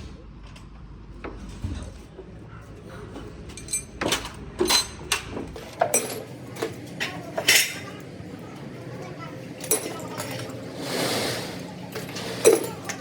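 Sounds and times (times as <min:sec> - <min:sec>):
metal parts clinking and knocking: 0:03.5 - 0:07.9, 0:11.9 - 0:13.0.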